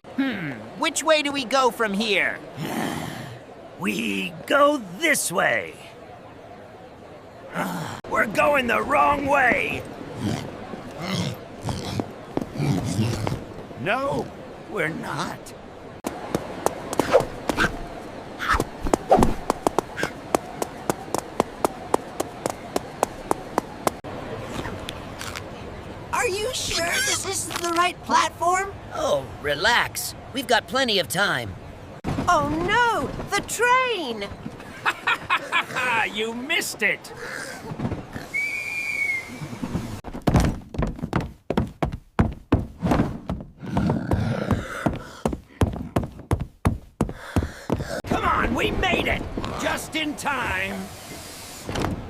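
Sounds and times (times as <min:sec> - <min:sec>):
high whistle: 0:38.3 - 0:39.5
heavy thuds: 0:40.0 - 0:48.0.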